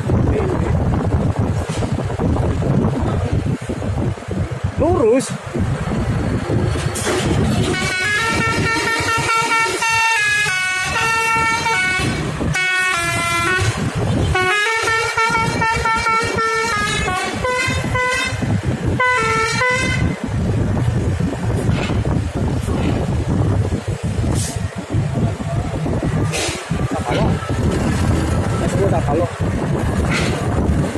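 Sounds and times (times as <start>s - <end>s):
low engine and road noise: 0.0s - 30.9s
multi-tone bus horn tune: 7.0s - 20.3s.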